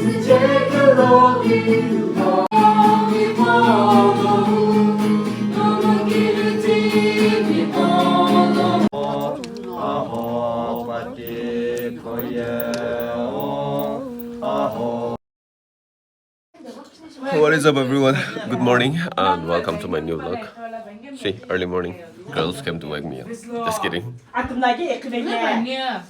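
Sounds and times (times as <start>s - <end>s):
choral singing: 0.0s - 15.2s.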